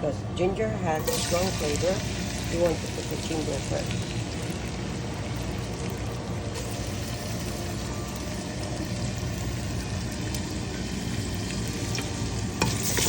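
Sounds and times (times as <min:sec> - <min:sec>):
ginger sizzling in hot oil: 0:01.0 - 0:13.0.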